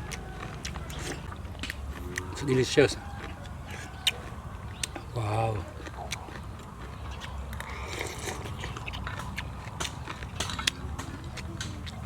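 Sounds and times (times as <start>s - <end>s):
person chewing noodles: 0.0s - 12.0s.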